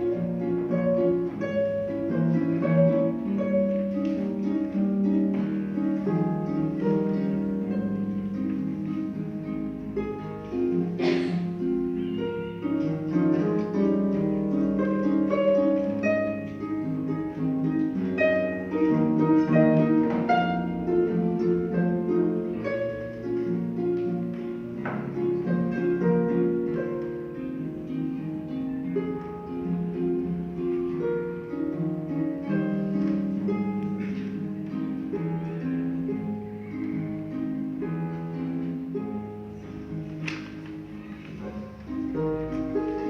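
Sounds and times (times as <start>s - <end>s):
harp plucked notes and chords: 0.0s - 43.0s.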